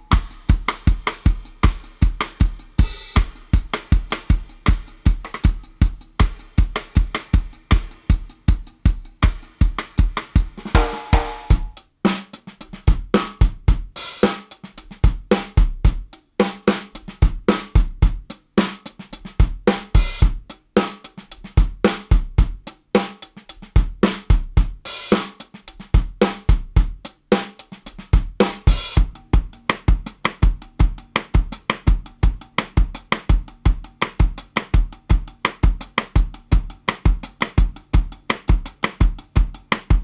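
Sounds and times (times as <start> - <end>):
hi-hat: 0.0 - 10.6
snare drum: 0.0 - 40.0.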